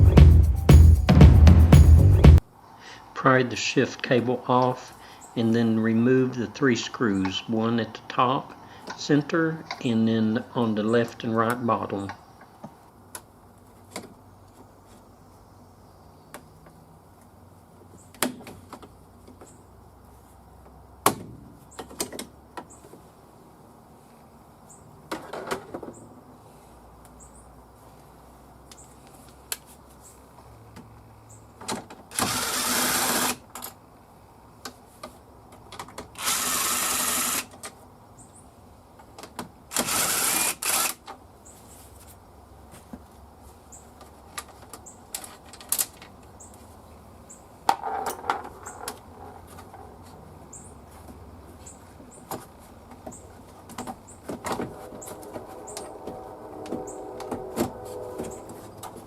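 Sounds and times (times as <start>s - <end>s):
cordless drill running: 32.1s - 33.4s, 36.2s - 37.5s, 39.7s - 41.0s.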